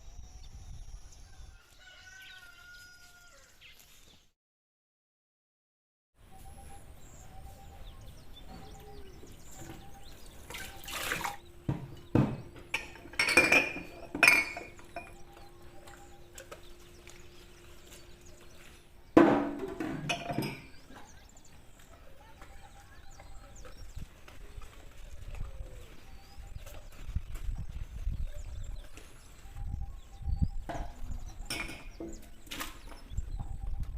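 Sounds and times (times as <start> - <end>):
dishes and glasses clinking: 11.7 - 16.0, 19.3 - 21.0, 30.7 - 32.0.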